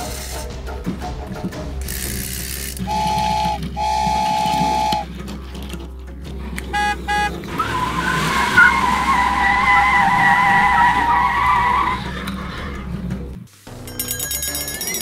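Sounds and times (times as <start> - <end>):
wavering squealing tone: 2.9 - 5.1, 6.7 - 12.0
short electronic beeps: 6.8 - 7.4.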